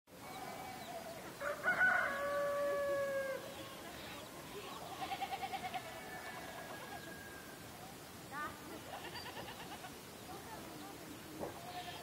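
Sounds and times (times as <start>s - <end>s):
faint rooster crow: 0.4s - 3.5s, 6.0s - 7.6s
rooster crowing: 1.4s - 3.5s
quavering animal call: 4.8s - 7.6s.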